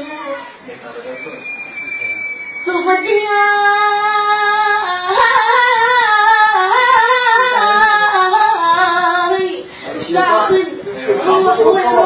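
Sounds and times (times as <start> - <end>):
child singing wordless vocal run: 2.7 - 12.0.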